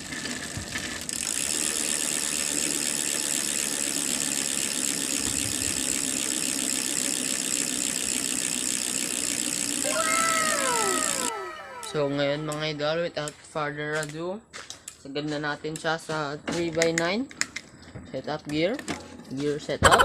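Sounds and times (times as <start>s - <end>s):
bicycle hub freewheeling buzz: 0.0s - 12.6s.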